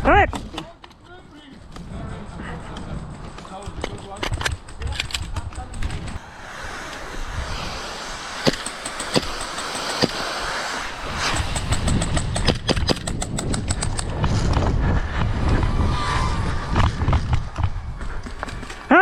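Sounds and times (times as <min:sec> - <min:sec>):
airsoft gunshots: 0:07.6 - 0:14.0.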